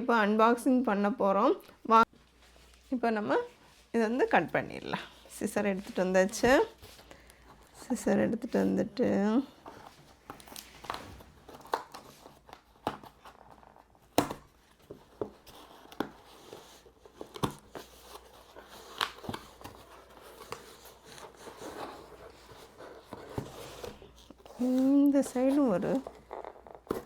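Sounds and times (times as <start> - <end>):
packaging rustling: 9.6 - 27.0.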